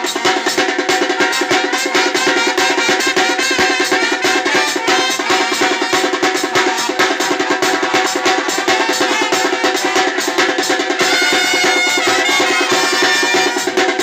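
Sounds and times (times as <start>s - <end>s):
group playing drums: 0.0s - 14.0s.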